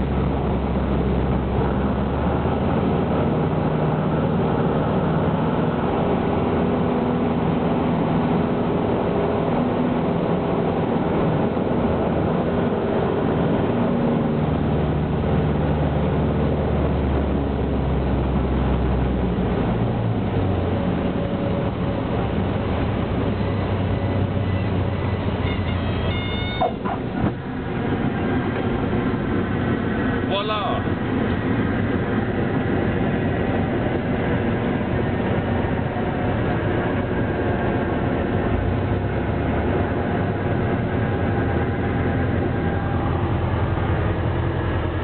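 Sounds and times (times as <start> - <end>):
light aircraft engine and propeller: 0.0 - 45.0.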